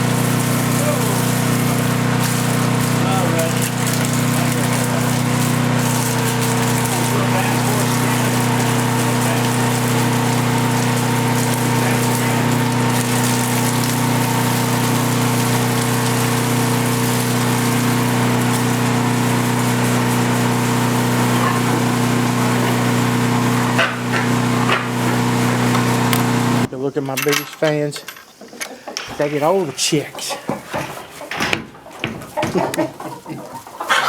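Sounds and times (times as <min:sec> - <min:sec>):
motor humming: 0:00.0 - 0:26.7.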